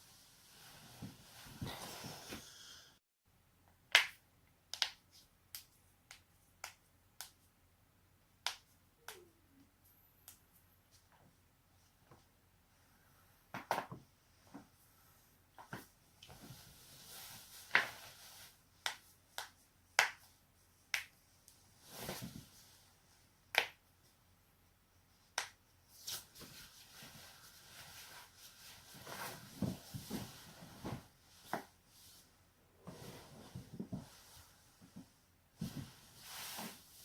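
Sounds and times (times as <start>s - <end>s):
soft rustling of movement: 0.0s - 2.7s, 14.2s - 18.7s, 20.5s - 23.3s, 25.9s - 37.0s.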